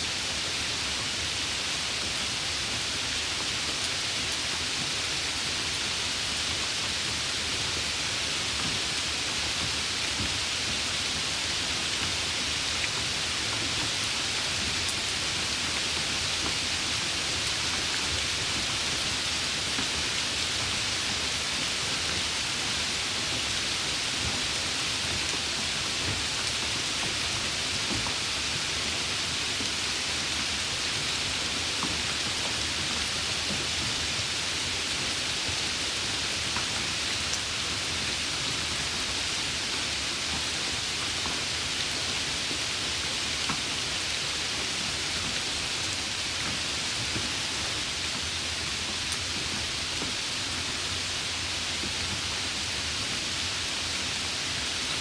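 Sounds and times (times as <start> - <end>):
steady rain hissing: 0.0 - 55.0.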